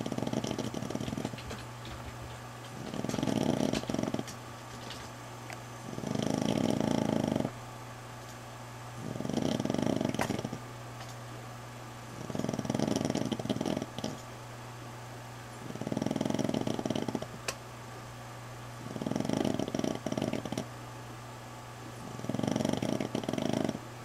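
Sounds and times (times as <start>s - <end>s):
dog snoring: 0.0s - 2.0s, 2.7s - 4.4s, 5.8s - 7.6s, 9.0s - 10.6s, 12.1s - 14.2s, 15.6s - 17.4s, 18.8s - 20.7s, 22.0s - 23.8s.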